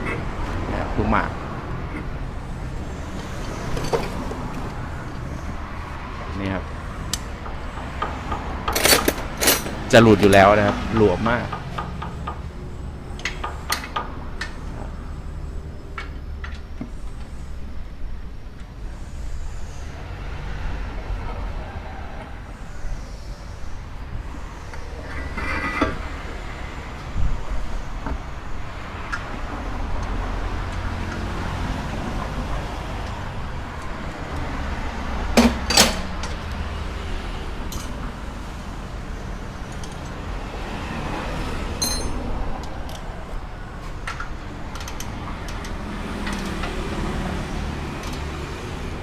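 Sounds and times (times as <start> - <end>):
metallic clinks of tools: 41.8 - 42.2
sharp metal knocks: 41.8 - 42.2.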